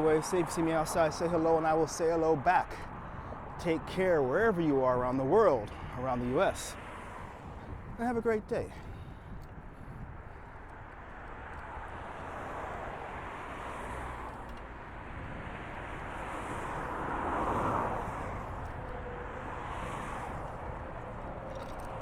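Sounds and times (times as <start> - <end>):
street traffic noise: 0.0 - 22.0
vehicle passing: 10.7 - 22.0.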